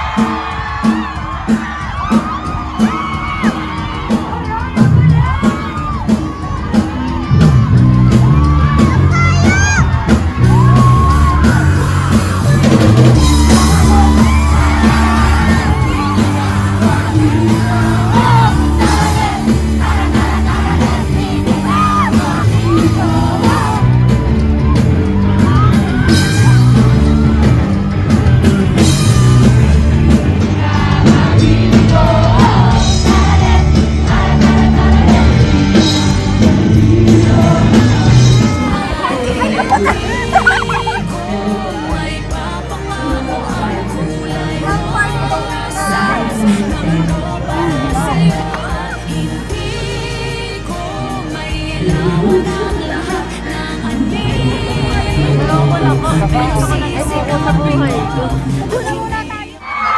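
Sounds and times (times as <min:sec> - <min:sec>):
people yelling: 0:00.0 - 0:29.6, 0:37.2 - 0:42.3, 0:44.6 - 0:49.2, 0:54.2 - 0:59.9
loud music with singing: 0:00.0 - 0:59.9.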